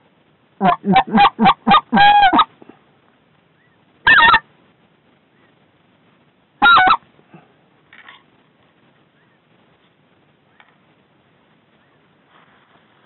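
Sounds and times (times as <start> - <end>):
goose call blown in bursts: 0.6 - 2.5, 4.1 - 4.4, 6.6 - 7.0.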